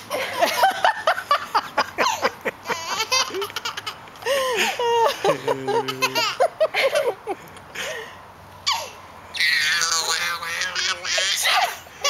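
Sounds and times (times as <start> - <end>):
adults laughing: 0.0 - 7.9
baby laughing: 2.0 - 7.0, 8.7 - 11.8.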